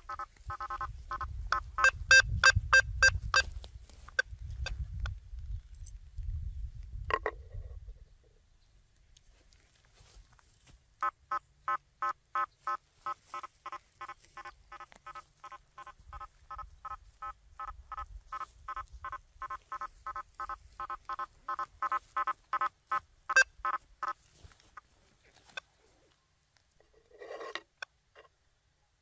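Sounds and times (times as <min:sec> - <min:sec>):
metal detector beeping: 0:00.0 - 0:04.3, 0:12.4 - 0:23.8.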